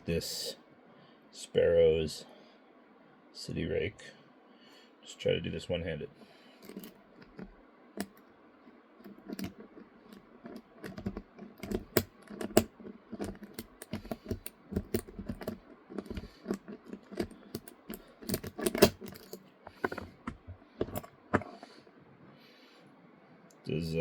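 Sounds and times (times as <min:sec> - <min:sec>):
lock pick clicking and scraping: 0:06.6 - 0:08.3, 0:09.0 - 0:21.8.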